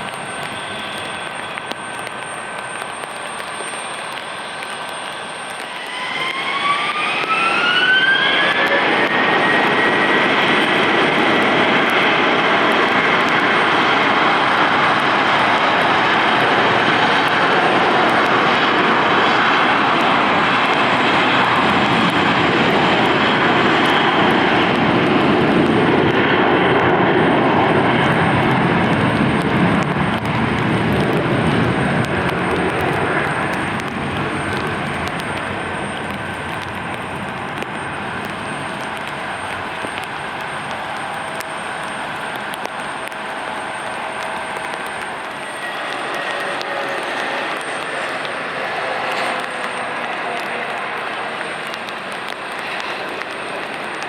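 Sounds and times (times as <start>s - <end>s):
jet engines spooling up: 0.0s - 54.0s.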